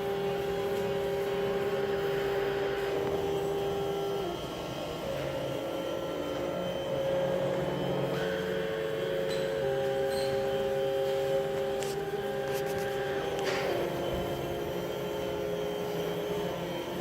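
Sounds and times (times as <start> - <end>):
drone music with held tones: 0.0 - 17.0.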